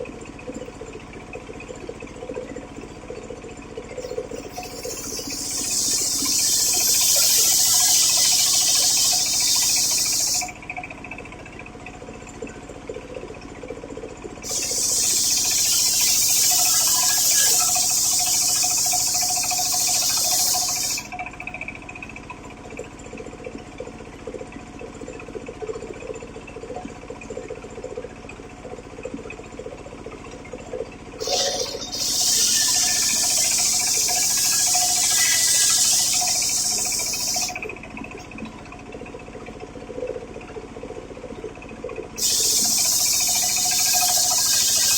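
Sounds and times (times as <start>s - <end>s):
circular saw spinning: 4.0s - 10.6s, 14.4s - 21.2s, 31.2s - 37.7s, 42.2s - 44.9s
saw cutting wood high hiss: 4.2s - 10.5s, 14.4s - 21.1s, 31.2s - 37.6s, 42.2s - 44.9s.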